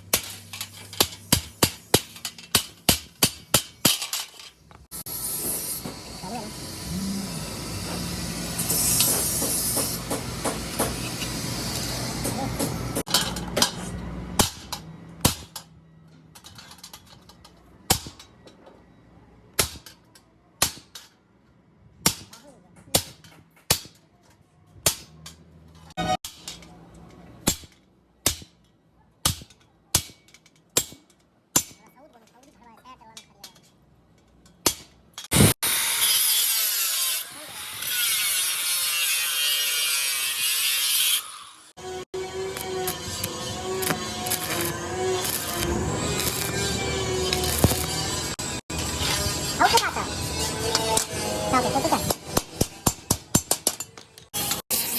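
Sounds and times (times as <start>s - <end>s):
hammer striking steel: 0.1s - 4.3s, 7.8s - 15.7s, 17.9s - 18.4s, 22.0s - 24.0s, 24.8s - 25.4s, 27.4s - 28.6s, 29.2s - 31.9s, 41.8s - 54.6s
power tool grinding steel: 5.0s - 13.1s, 35.2s - 53.4s, 54.2s - 54.9s.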